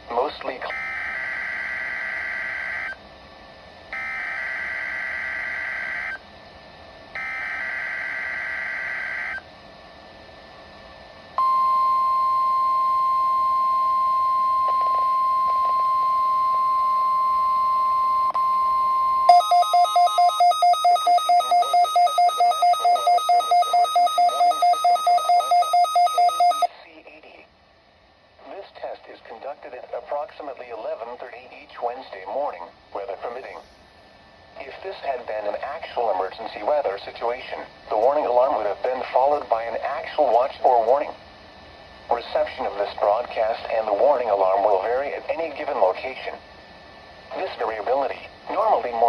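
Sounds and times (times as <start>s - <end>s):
rapid beeping alarm: 0.7s - 3.0s, 4.0s - 6.2s, 7.2s - 9.4s, 11.4s - 26.7s
steady alarm tone: 0.7s - 3.0s, 3.9s - 6.2s, 7.1s - 9.4s, 11.4s - 26.7s
warbling digital data bursts: 19.3s - 26.7s.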